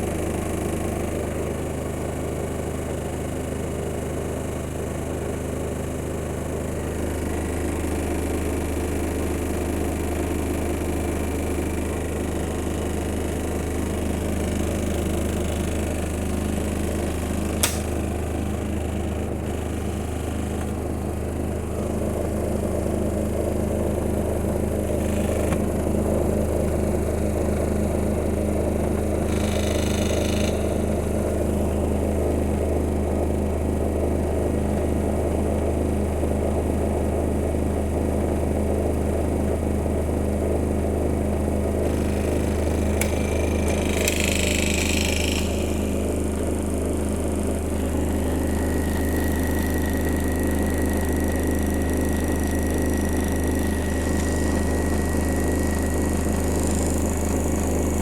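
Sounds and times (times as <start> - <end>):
appliance humming and whirring: 0.0 - 58.0
sharp click: 17.6 - 18.0, 42.8 - 45.8.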